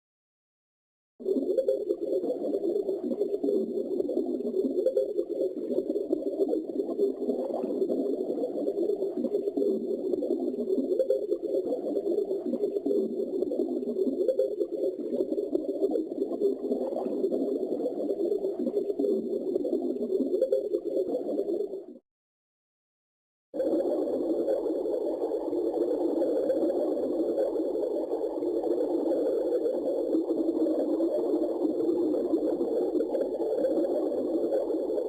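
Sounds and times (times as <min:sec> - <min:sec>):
muffled underwater churning: 0:01.2 - 0:22.0.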